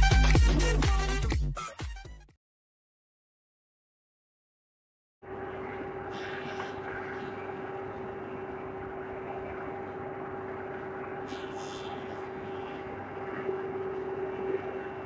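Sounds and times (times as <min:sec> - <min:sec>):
wood moulding machine humming: 0:05.3 - 0:15.0.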